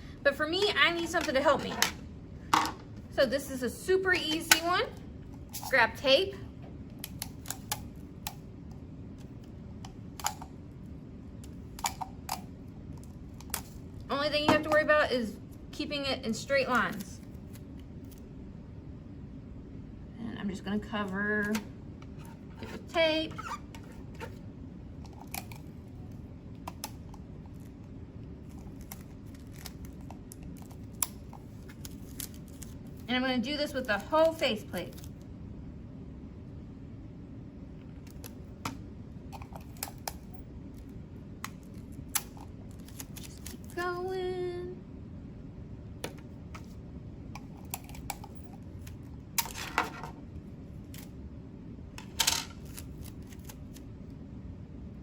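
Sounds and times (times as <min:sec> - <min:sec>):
steady low hum: 0:00.0 - 0:55.0
tape tearing and crackling: 0:42.7 - 0:43.8.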